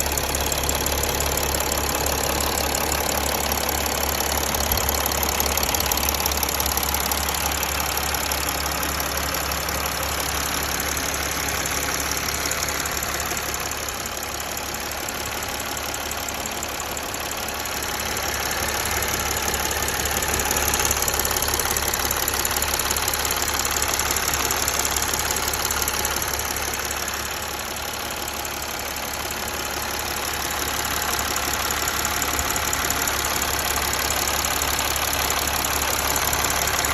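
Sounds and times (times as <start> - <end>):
diesel engine idling with ticking: 0.0 - 36.9.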